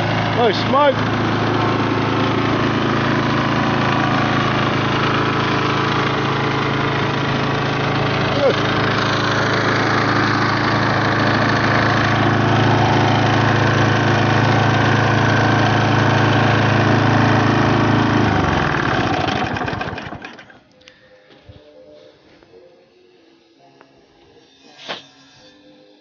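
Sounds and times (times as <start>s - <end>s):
lawn mower engine running: 0.0s - 20.8s.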